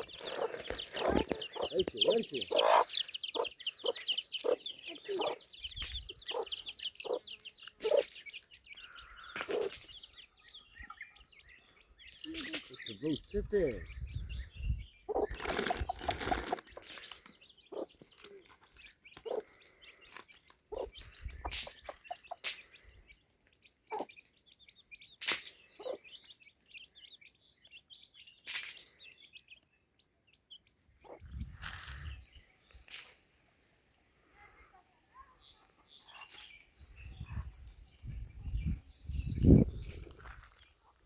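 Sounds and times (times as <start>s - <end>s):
birds chirping: 0.0s - 41.0s.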